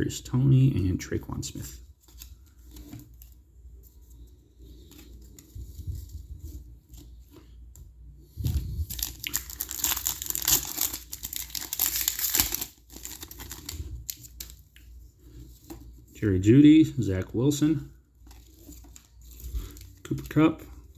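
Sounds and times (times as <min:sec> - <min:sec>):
wrapper tearing and crinkling: 0:08.5 - 0:14.6.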